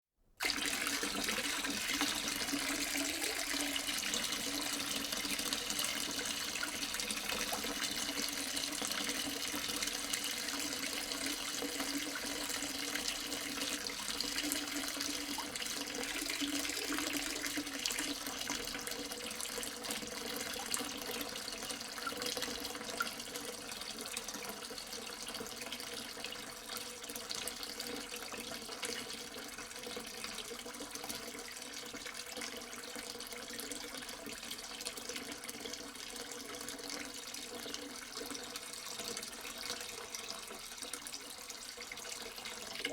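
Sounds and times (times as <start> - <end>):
water jet splashing: 0.4 - 8.0.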